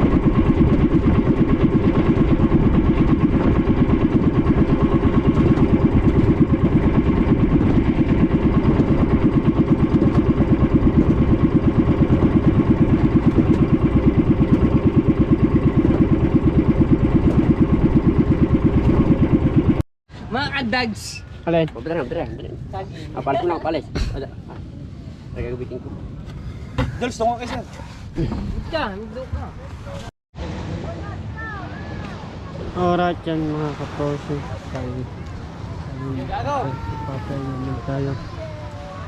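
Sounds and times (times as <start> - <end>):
boat engine chugging: 0.0 - 19.8.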